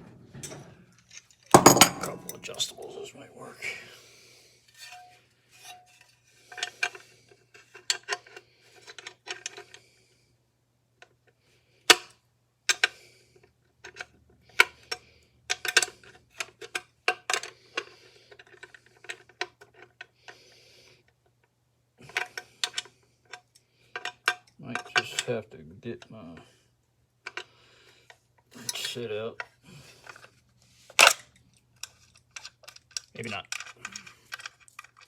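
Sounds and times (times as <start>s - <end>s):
metal tools clinking and clanking: 0.0s - 2.7s, 4.7s - 6.0s.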